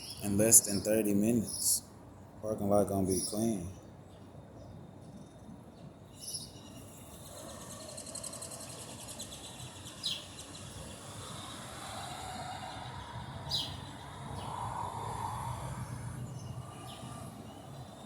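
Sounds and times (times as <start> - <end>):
birds calling: 0.0 - 1.8, 2.4 - 3.8
outdoor background noise: 0.0 - 18.0.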